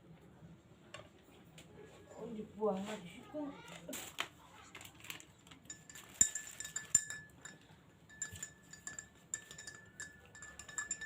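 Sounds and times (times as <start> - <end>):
cutlery clinking against dishes: 5.6 - 11.0.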